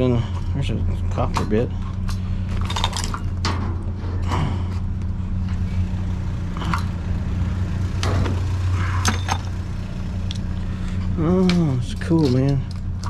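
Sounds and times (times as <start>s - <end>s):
vehicle engine idling: 0.0s - 13.0s
metal bits clinking: 1.3s - 3.8s, 11.4s - 13.0s.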